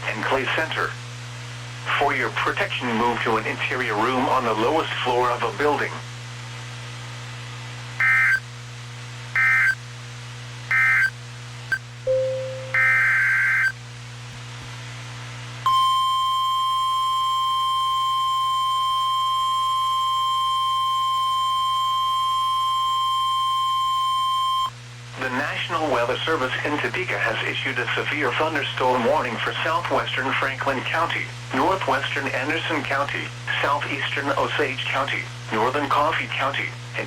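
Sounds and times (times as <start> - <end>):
steady alert tone: 12.1 - 13.3.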